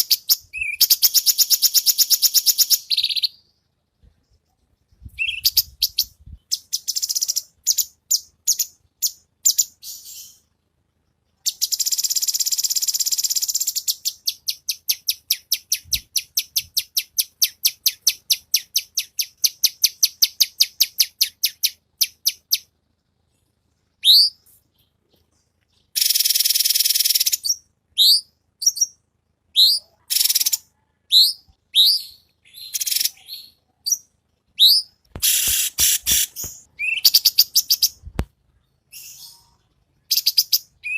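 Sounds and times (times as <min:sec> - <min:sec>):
songbird singing: 0:00.0 - 0:40.9
bird buzzy trills: 0:25.8 - 0:38.1
bird whistled notes: 0:34.6 - 0:38.0, 0:38.9 - 0:40.9.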